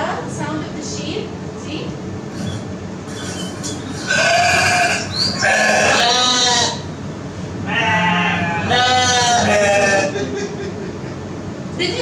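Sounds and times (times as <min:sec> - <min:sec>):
sheep bleating: 0:03.8 - 0:06.9, 0:07.7 - 0:10.2.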